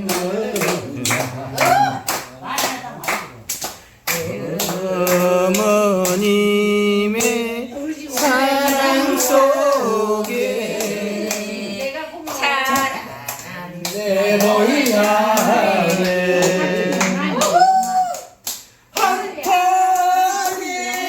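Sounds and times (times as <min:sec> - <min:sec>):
hand-clapping: 0:00.0 - 0:06.4, 0:08.2 - 0:21.0.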